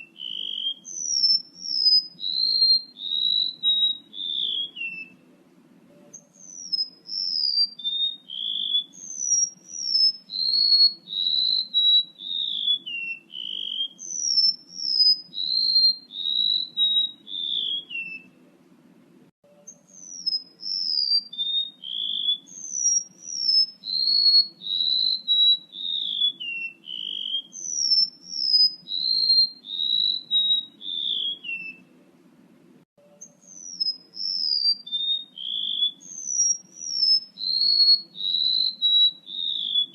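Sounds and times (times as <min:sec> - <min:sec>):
bird whistling call: 0:00.0 - 0:05.2, 0:06.0 - 0:18.4, 0:19.6 - 0:32.0, 0:33.1 - 0:39.9
faint low hum: 0:00.9 - 0:13.2, 0:16.1 - 0:20.9.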